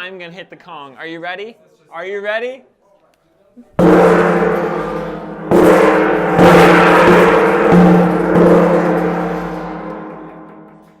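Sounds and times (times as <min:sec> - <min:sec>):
gong ringing deep tone: 0:03.8 - 0:11.0.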